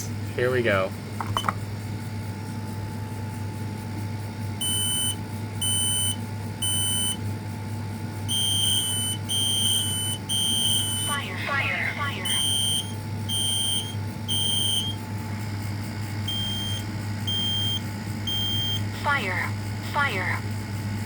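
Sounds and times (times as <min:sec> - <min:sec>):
steady low hum: 0:00.0 - 0:21.0
smoke alarm beeps: 0:04.6 - 0:07.2, 0:08.3 - 0:11.2, 0:12.2 - 0:15.0, 0:16.2 - 0:19.1.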